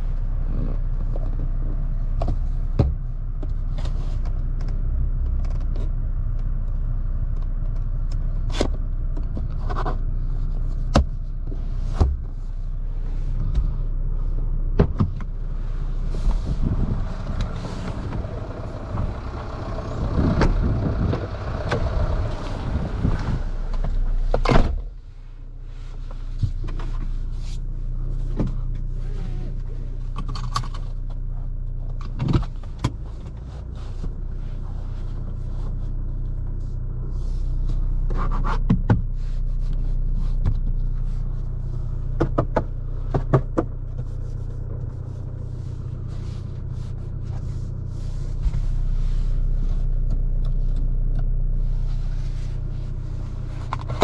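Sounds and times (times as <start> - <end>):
diesel engine droning: 0.0 - 54.0.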